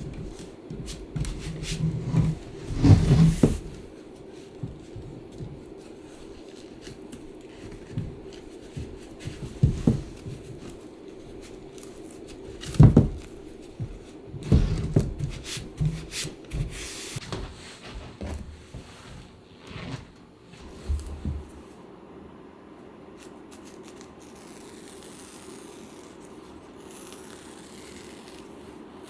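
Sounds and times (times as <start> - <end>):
knocks and thumps: 0.0 - 3.9, 7.6 - 10.7, 12.5 - 17.4.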